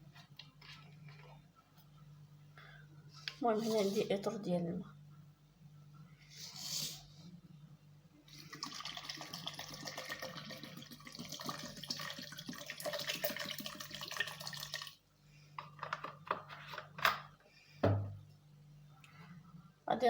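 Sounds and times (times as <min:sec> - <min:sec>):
water pouring into blender jar: 0:08.3 - 0:15.0.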